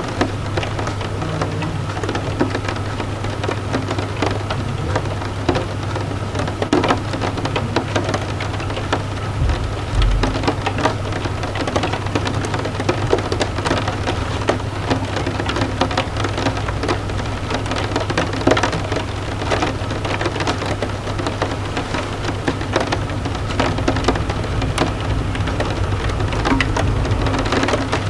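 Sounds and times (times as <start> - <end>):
rain hissing: 0.0 - 28.0
raindrops tapping on window: 0.0 - 28.0
low rumble: 9.2 - 10.8, 23.1 - 28.0.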